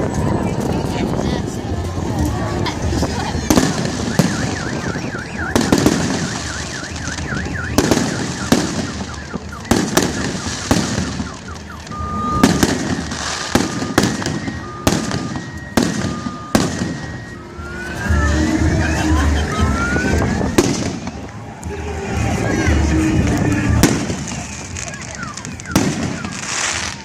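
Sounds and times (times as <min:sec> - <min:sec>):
fireworks bursting with sharp bangs: 0:02.0 - 0:17.5, 0:19.9 - 0:27.0
car alarm wailing and beeping: 0:03.5 - 0:21.3, 0:23.2 - 0:27.0.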